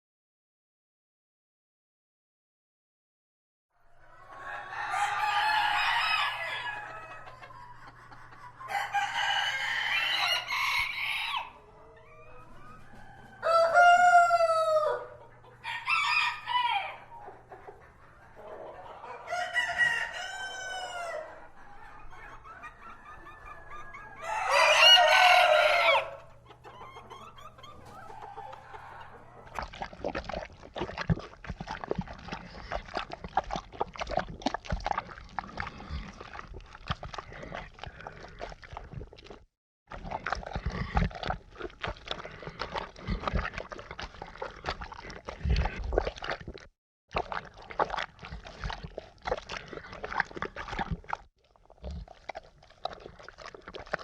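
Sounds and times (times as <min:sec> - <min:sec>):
chickens clucking: 0:03.8 - 0:30.8
rooster crowing: 0:04.2 - 0:07.3, 0:08.7 - 0:17.1, 0:19.0 - 0:21.5, 0:22.4 - 0:26.3, 0:27.8 - 0:29.5.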